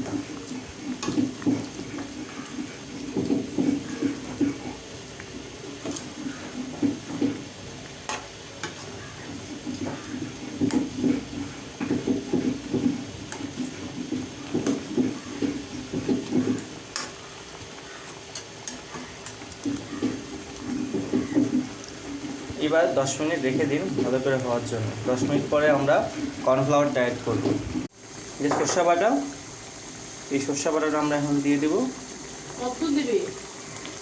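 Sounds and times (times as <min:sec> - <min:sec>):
spoon scraping while stirring: 0:00.0 - 0:24.4
light sizzle: 0:00.0 - 0:34.0
utensil clicking against pan: 0:08.0 - 0:24.1.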